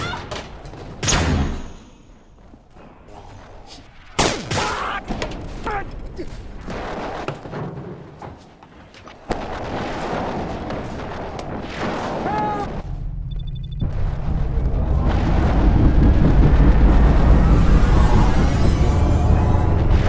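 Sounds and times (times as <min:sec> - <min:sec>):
loud blast: 0:13.8 - 0:20.0.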